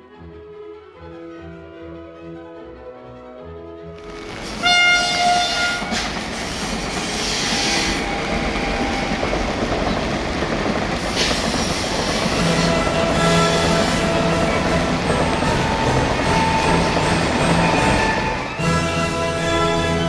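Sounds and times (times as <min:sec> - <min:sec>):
steam locomotive whistle: 0:04.0 - 0:20.0
train running past: 0:04.0 - 0:20.0.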